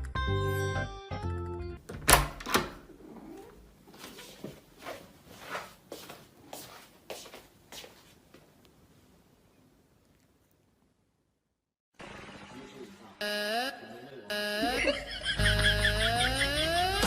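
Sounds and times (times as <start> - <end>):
background music: 12.8 - 17.0.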